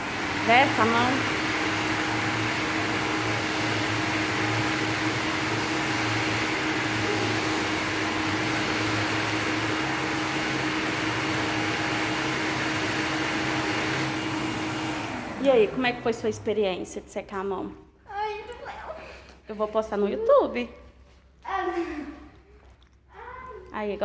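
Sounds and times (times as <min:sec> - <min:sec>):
electric hand dryer blowing: 0:00.0 - 0:16.3.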